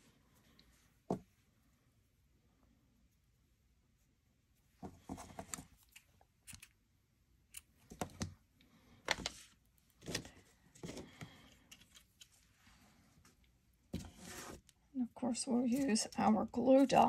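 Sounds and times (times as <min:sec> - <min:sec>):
hands handling paper: 0:09.0 - 0:12.5.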